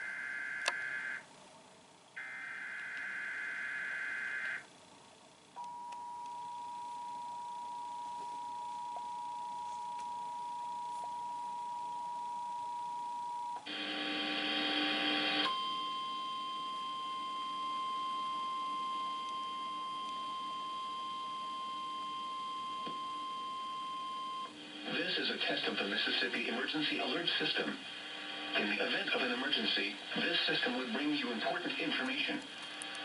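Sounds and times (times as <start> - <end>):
single steady tone: 5.6 - 13.6.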